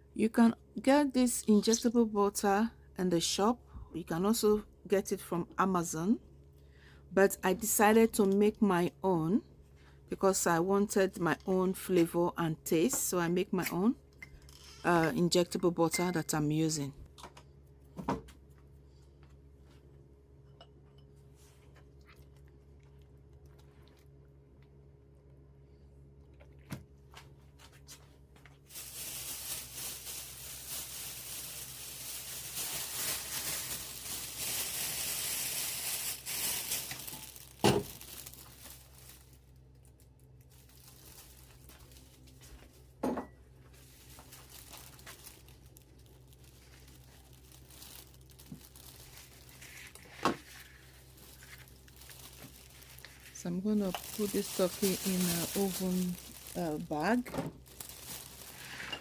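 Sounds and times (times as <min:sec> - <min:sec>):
plastic bag crinkling: 0:28.6 - 0:42.8, 0:43.7 - 0:59.0.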